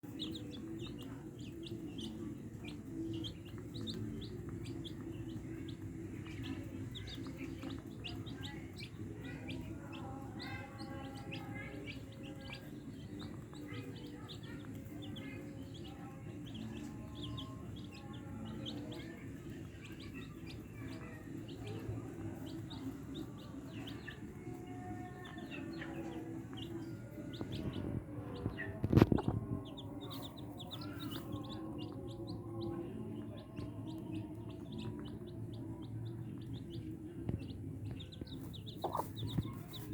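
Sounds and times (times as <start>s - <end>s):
small birds chirping: 0.0s - 39.9s
chickens clucking: 25.2s - 39.9s.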